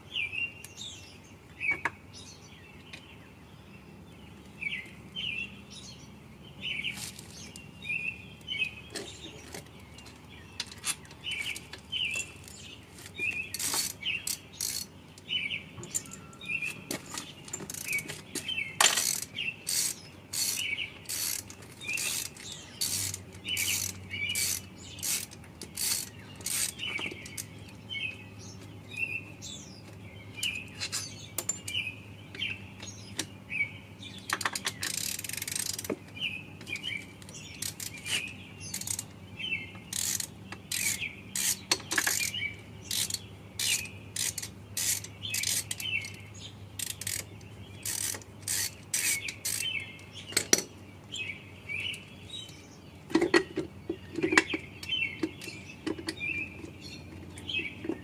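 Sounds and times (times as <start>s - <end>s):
ratchet wrench clicking: 13.5s - 14.9s, 18.8s - 27.5s, 34.3s - 35.9s, 37.5s - 39.1s, 39.9s - 46.2s, 46.8s - 49.8s.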